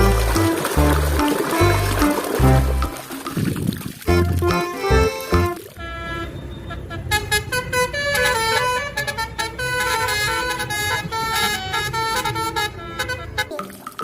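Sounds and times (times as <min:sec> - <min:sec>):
toy bus horn playing a tune: 0:04.1 - 0:13.6.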